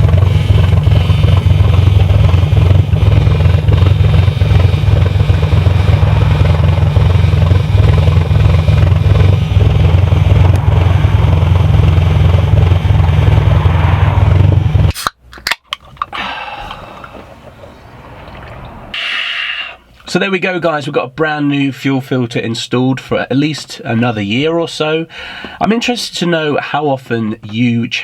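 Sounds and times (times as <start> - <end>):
engine running with deep rumble: 0.0 - 20.1.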